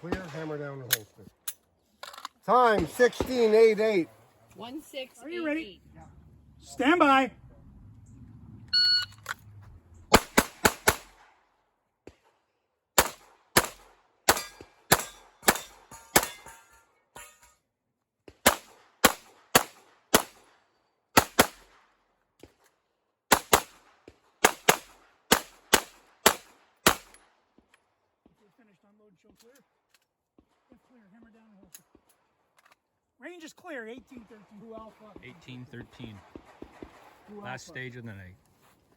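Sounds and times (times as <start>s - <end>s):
shot timer beep: 8.7s - 9.2s
pistol firing rapid shots: 10.1s - 11.3s, 13.0s - 16.3s, 18.4s - 20.4s, 21.2s - 21.7s, 23.3s - 23.8s, 24.4s - 27.1s.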